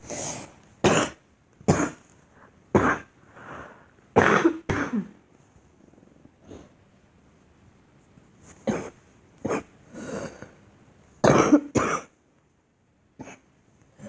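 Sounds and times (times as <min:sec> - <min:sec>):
soft breath: 0:03.2 - 0:04.1
woman coughing: 0:04.2 - 0:05.2, 0:11.2 - 0:12.1.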